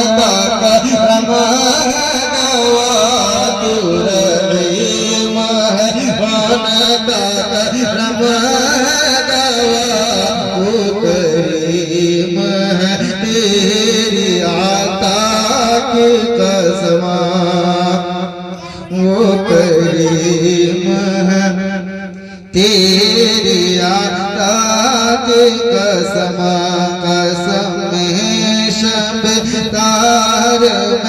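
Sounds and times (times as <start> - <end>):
man singing melismatic phrases: 18.6 - 21.6.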